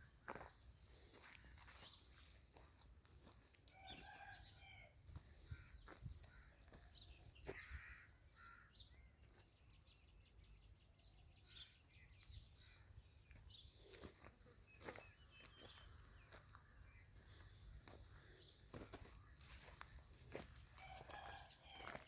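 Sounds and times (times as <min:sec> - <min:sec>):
bird calls and chirps: 0:05.4 - 0:22.0.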